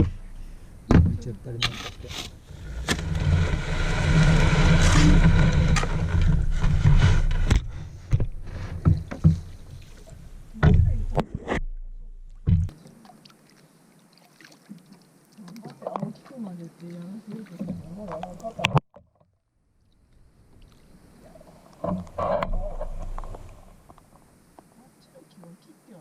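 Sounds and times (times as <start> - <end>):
water swishing with paddle strokes: 1.6 - 11.3, 12.7 - 18.8
paddle knocking against hull: 2.8 - 11.3.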